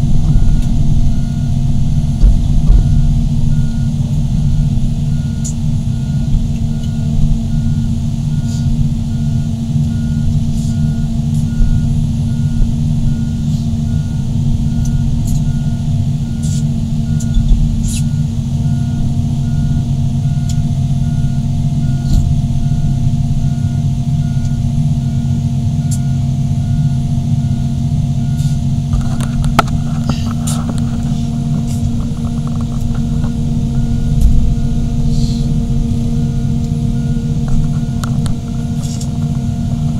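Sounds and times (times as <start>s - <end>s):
heavy diesel engines running: 0.0s - 39.9s
travel alarm beeping: 0.0s - 39.9s
metallic clanking: 28.9s - 35.0s.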